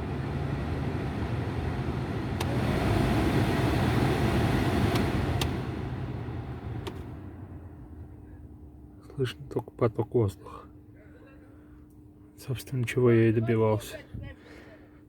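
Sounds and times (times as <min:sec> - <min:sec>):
heater fan blowing air: 0:00.0 - 0:09.5
fan speed switch clicking: 0:02.2 - 0:07.2.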